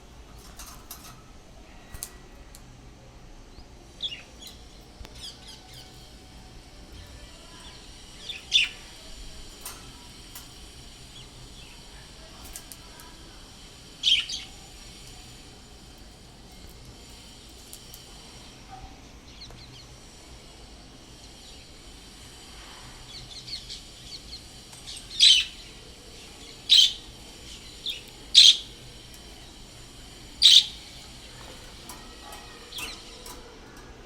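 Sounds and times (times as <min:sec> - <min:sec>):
high-pitched bird calls: 0:14.0 - 0:14.7, 0:24.9 - 0:29.5, 0:30.2 - 0:33.4
faint bird chirps: 0:30.4 - 0:31.0.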